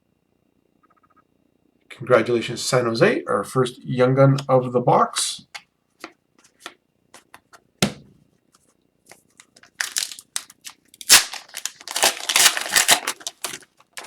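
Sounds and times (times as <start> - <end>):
foil wrapper crinkling and tearing: 9.4 - 14.0.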